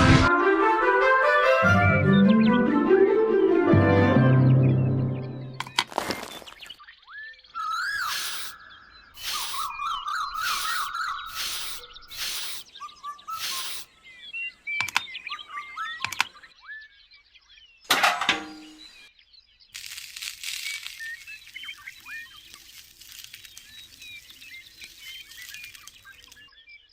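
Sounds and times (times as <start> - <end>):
small birds chirping: 5.4 - 17.9, 18.5 - 26.9.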